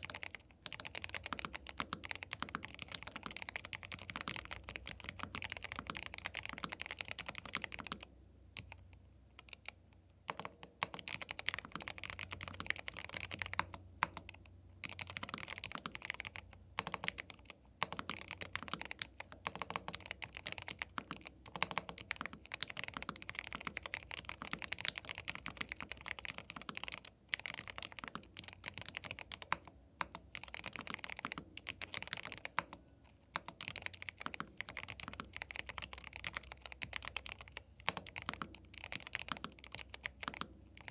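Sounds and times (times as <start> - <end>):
mechanical keyboard typing: 0.0 - 40.9.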